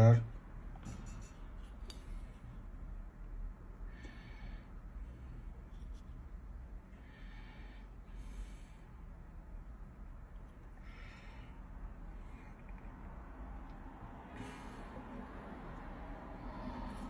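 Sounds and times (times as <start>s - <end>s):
faint low hum: 0.0s - 17.0s
puffs of breath: 14.2s - 17.0s.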